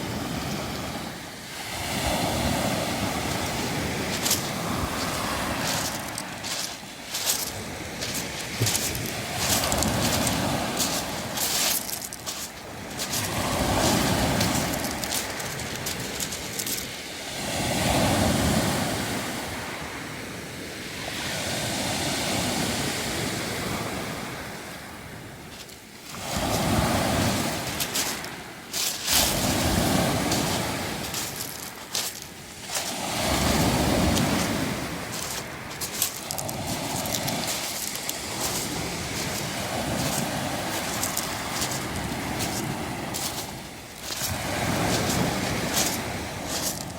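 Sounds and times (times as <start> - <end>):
waves washing over pebbles: 0.0 - 46.9
stones clattering and rattling: 5.7 - 17.0, 27.8 - 32.9.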